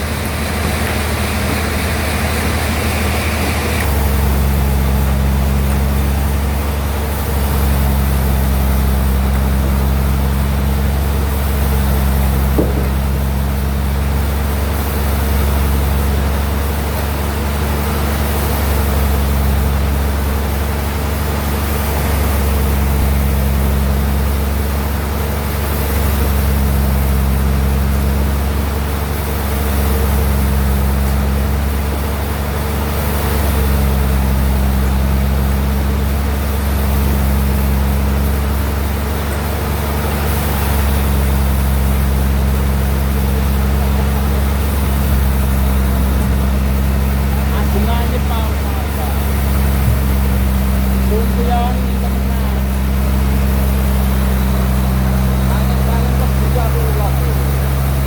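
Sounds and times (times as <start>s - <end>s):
bandsaw running: 32.8s - 58.0s.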